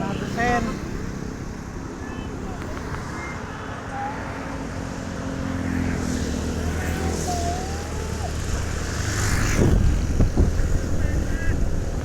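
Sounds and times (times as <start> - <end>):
bus engine rumble: 0.0 - 12.0.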